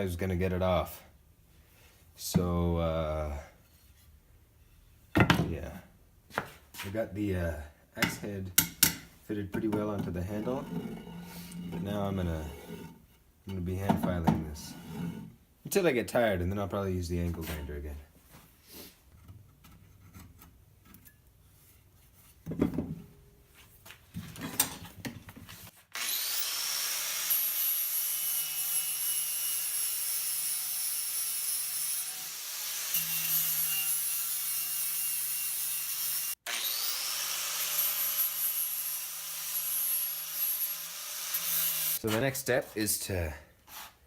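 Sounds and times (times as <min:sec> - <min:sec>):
faint scrapes: 0:10.3 - 0:13.2
angle grinder whining: 0:26.0 - 0:42.0.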